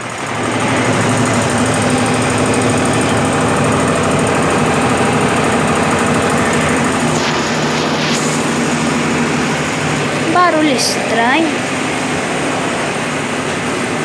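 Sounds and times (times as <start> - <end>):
washing machine spinning: 0.0 - 7.1.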